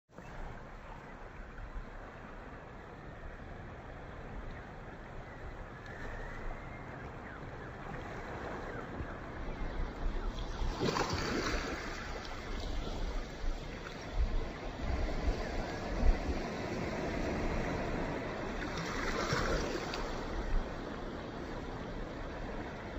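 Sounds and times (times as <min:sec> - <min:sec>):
ocean waves washing: 0:00.1 - 0:22.9
wind buffeting microphone: 0:00.5 - 0:22.9.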